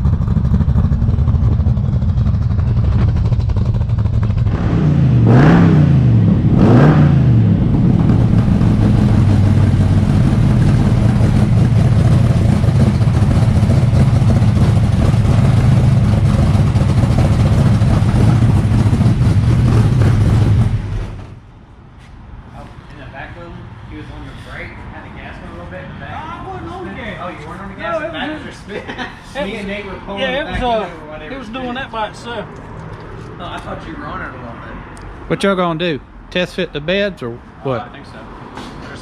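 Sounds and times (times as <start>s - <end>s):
truck engine revving: 0.0s - 21.4s.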